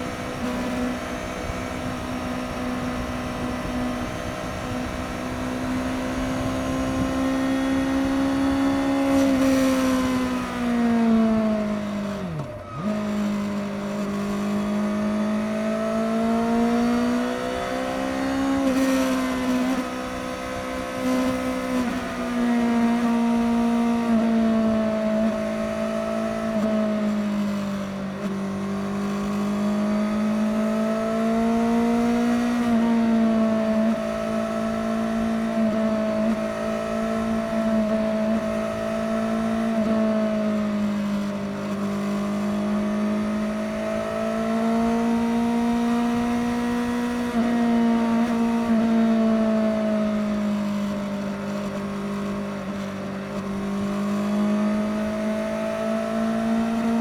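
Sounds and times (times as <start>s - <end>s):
motorcycle engine cruising: 0.0s - 57.0s.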